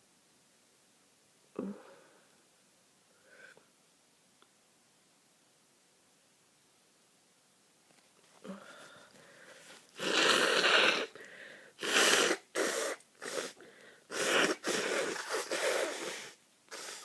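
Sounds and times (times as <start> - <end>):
person blowing nose: 10.0 - 11.2, 11.8 - 17.0.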